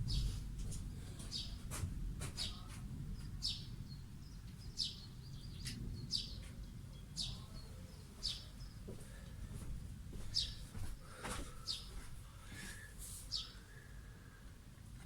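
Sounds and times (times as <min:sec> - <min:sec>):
steady low rumble: 0:00.0 - 0:04.4
bird chirping: 0:01.3 - 0:01.6, 0:02.4 - 0:08.9, 0:10.3 - 0:10.7, 0:11.6 - 0:12.0, 0:13.3 - 0:13.6.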